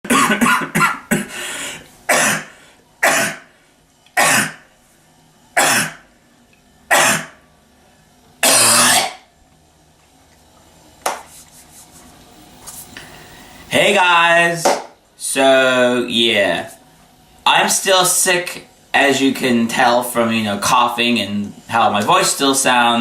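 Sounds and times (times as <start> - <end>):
person coughing: 0.0 - 1.4, 2.1 - 3.5, 4.2 - 4.6, 5.6 - 6.0, 6.9 - 7.4, 8.4 - 9.2.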